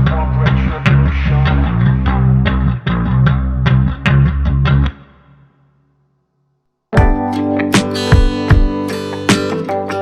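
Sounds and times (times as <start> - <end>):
rock backing track with guitar: 7.0 - 10.0.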